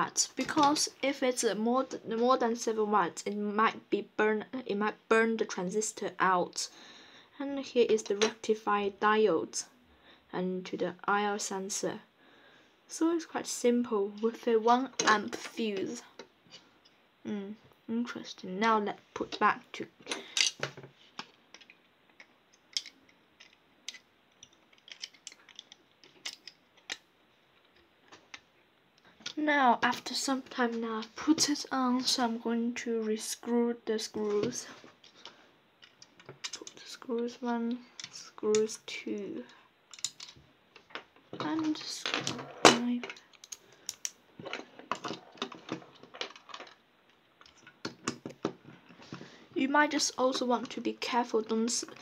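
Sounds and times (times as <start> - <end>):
plastic parts clicking: 20.1 - 27.0, 35.0 - 36.9, 38.0 - 38.7, 39.9 - 46.8.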